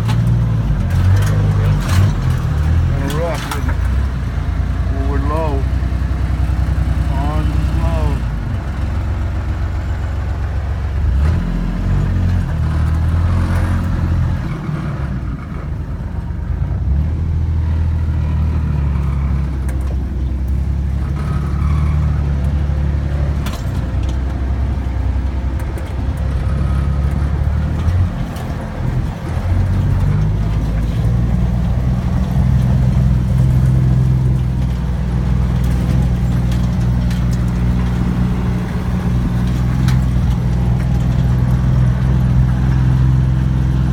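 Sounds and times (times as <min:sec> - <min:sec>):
knocks and rattles: 0:00.0 - 0:04.2, 0:19.5 - 0:43.7
vehicle engine in low gear: 0:00.0 - 0:43.9.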